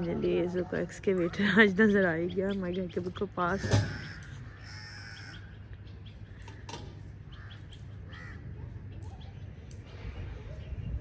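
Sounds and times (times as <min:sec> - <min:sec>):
birds calling: 0:00.0 - 0:11.0
steady low rumble: 0:01.0 - 0:11.0.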